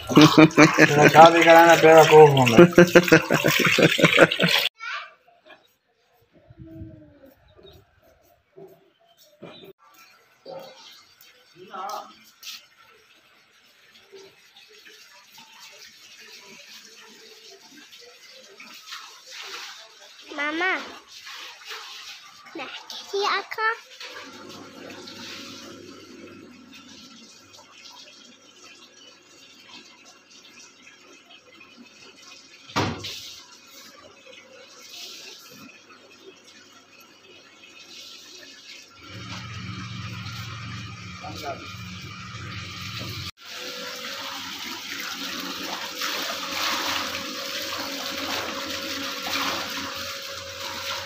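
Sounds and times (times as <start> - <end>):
washing machine water running: 0.0 - 4.7, 9.8 - 51.0
faint motor hum: 39.0 - 47.2.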